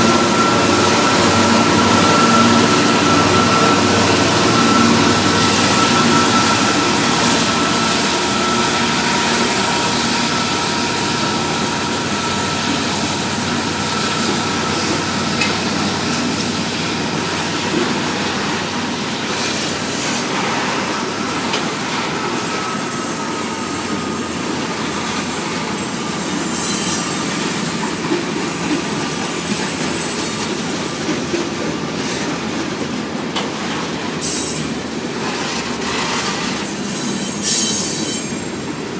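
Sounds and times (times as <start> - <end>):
high wheel squeal: 0.0 - 31.5, 34.2 - 38.6
freight train wheels rumbling on rails: 0.0 - 38.9.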